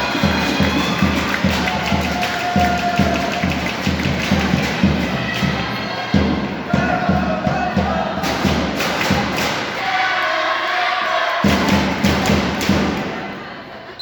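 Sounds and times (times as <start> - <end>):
music with thudding beat: 0.0 - 9.6.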